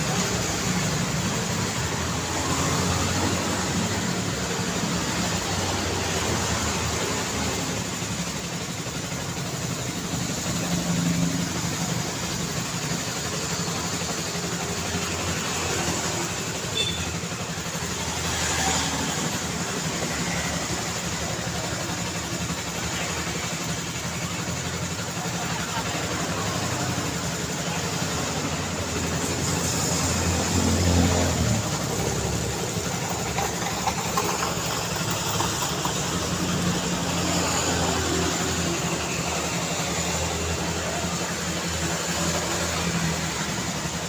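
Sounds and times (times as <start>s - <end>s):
city street traffic rumble: 0.0s - 44.0s
vehicle passing loudly: 28.7s - 33.6s.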